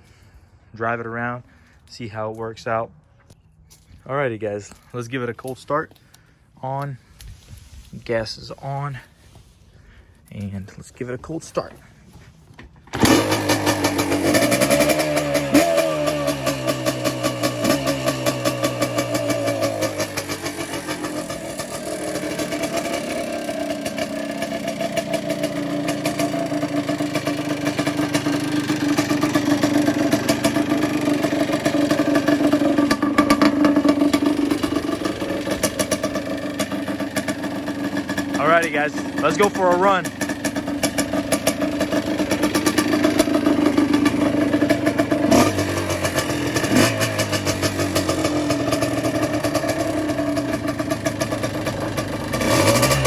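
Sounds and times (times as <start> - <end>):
two-stroke engine revving and idling: 12.9 - 53.0.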